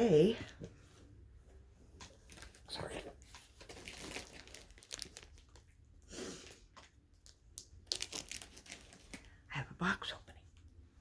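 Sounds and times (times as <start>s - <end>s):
packaging crinkling and rustling: 2.0s - 9.5s.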